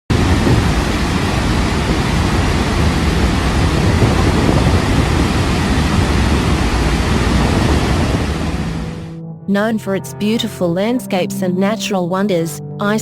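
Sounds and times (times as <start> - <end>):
waterfall rushing: 0.1 - 9.1.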